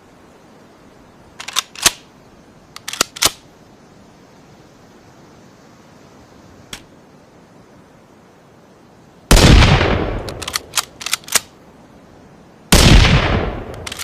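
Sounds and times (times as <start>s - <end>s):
rifle bolt clicking: 2.8s - 3.4s, 10.2s - 11.5s, 13.7s - 14.0s.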